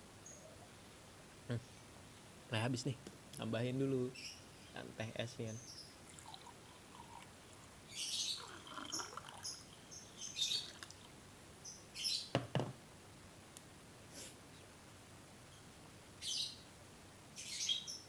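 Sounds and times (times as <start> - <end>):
birds chirping: 3.5 - 12.5, 15.5 - 16.7, 17.4 - 18.0
iced tea pouring into a glass: 6.0 - 11.1.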